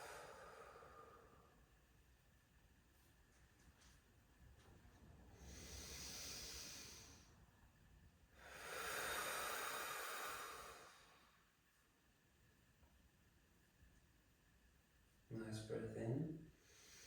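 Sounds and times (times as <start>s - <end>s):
person breathing deeply: 0.0s - 1.6s, 5.3s - 7.4s, 8.3s - 11.5s.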